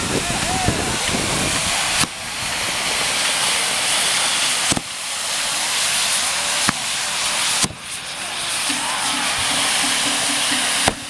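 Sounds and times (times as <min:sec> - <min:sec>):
firework spraying sparks hissing: 0:00.0 - 0:11.0
sharp cracks: 0:03.2 - 0:08.0.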